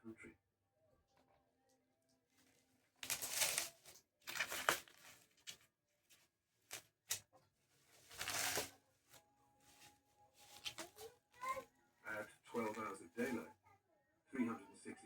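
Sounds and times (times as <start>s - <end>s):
packaging rustling and crinkling: 3.0s - 12.9s.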